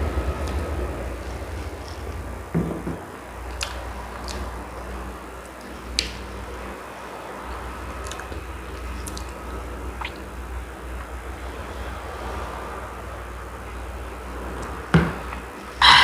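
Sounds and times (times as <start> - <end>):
steady low rumble: 0.0 - 15.8
mouth clicks and smacks: 8.0 - 9.4, 10.0 - 10.3.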